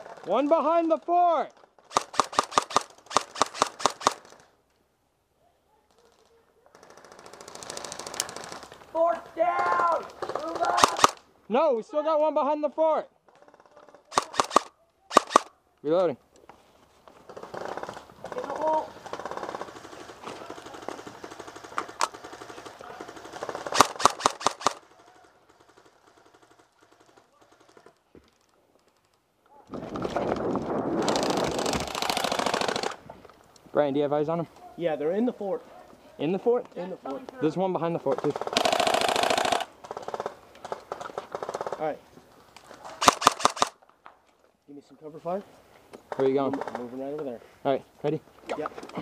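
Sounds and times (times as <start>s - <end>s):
airsoft guns firing bursts: 1.9s - 4.4s, 10.2s - 11.2s, 14.1s - 15.5s, 17.3s - 27.9s, 31.0s - 33.0s, 38.1s - 41.8s, 43.0s - 43.8s
faint distant shots: 1.9s - 4.4s, 10.2s - 11.2s, 14.1s - 15.5s, 19.0s - 24.8s, 43.0s - 43.8s.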